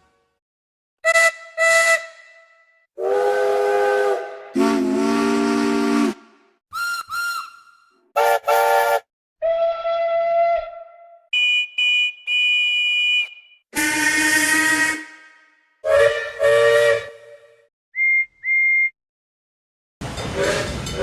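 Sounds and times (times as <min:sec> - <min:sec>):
steam locomotive whistle: 0:01.0 - 0:02.4, 0:03.0 - 0:07.5, 0:08.2 - 0:10.8, 0:13.8 - 0:15.2, 0:15.8 - 0:17.6, 0:20.4 - 0:21.0.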